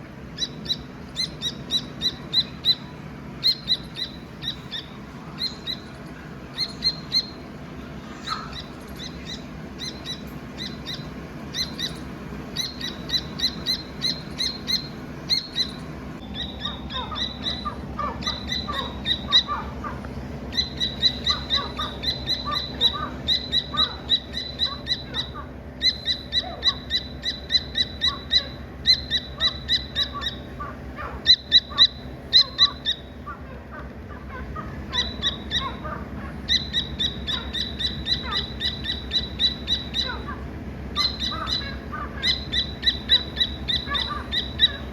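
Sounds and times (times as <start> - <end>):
chick chirping high peeps: 12.6 - 19.7, 20.5 - 33.0.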